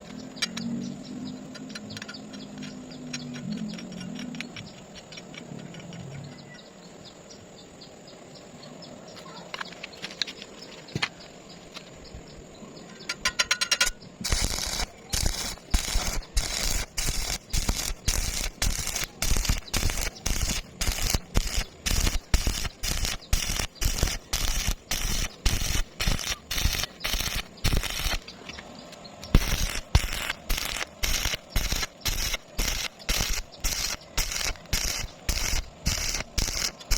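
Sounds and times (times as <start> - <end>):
welding arc crackling: 13.7 - 28.5, 29.2 - 36.9.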